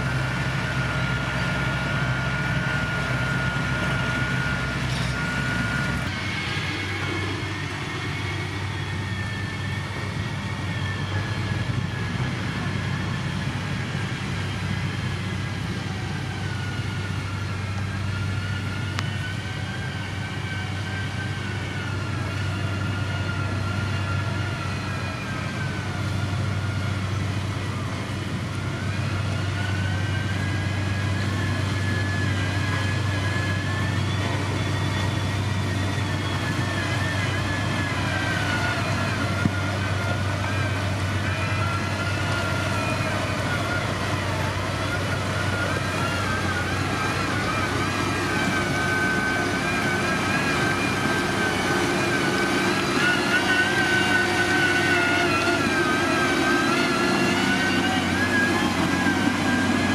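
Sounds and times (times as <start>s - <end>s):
diesel construction machine drone: 0.0s - 59.9s
high machine whine: 0.0s - 59.9s.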